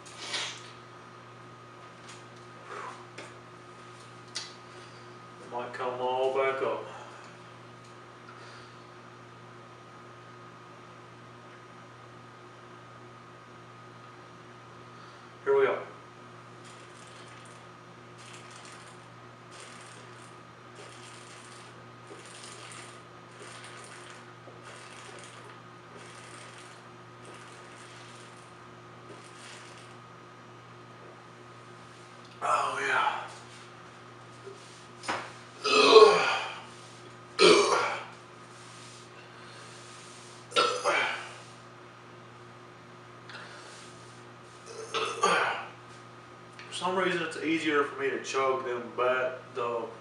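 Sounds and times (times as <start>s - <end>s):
low steady hum: 0.0s - 50.0s
person gulping beer: 22.2s - 28.3s, 35.6s - 36.6s, 37.4s - 38.1s
man burping loudly: 35.6s - 36.6s, 37.4s - 38.1s, 40.5s - 41.3s, 44.7s - 45.7s.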